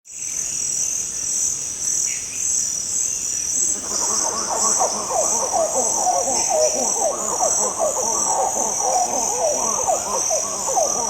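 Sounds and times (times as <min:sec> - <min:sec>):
high insect chorus: 0:00.1 - 0:11.0
monkeys calling: 0:03.8 - 0:11.0.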